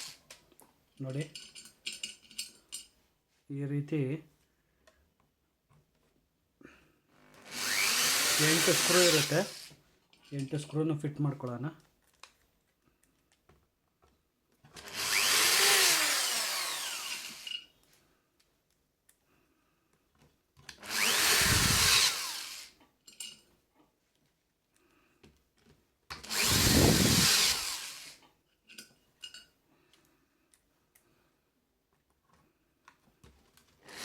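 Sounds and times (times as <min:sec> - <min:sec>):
electric screwdriver whirring: 0:07.4 - 0:09.7, 0:14.8 - 0:17.6, 0:20.8 - 0:22.7, 0:26.2 - 0:28.2.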